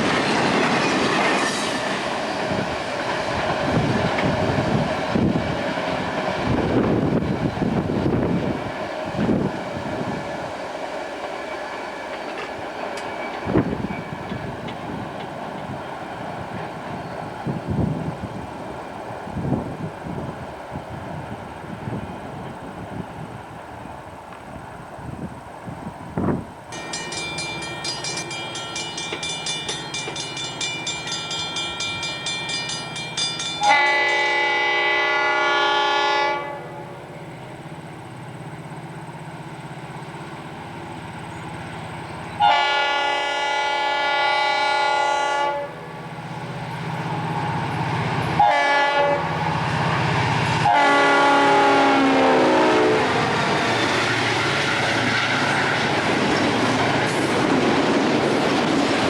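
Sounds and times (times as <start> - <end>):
train rumble and wheel clatter: 0.0 - 59.0
bell ringing: 26.7 - 34.2
locomotive air horn blasts: 33.6 - 37.2, 42.4 - 45.9, 48.4 - 49.4, 50.6 - 53.2.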